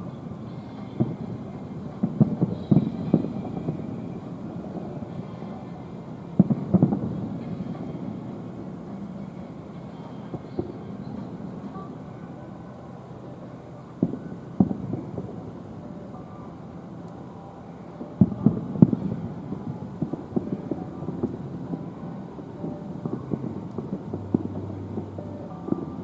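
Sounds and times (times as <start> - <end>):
distant fireworks booming: 0.4 - 12.1, 14.0 - 15.9, 18.0 - 26.0
fireworks popping: 0.8 - 5.4.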